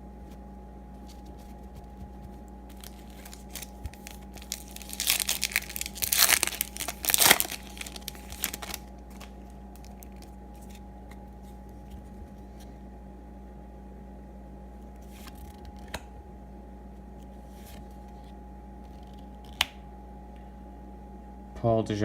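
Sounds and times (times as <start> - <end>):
wrapper tearing and crinkling: 2.7 - 10.8.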